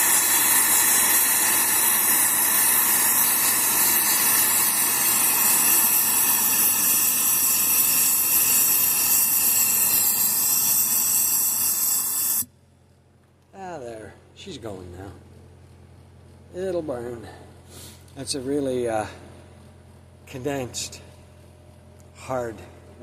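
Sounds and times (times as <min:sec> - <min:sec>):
forced air rushing into forge: 0:00.0 - 0:12.5.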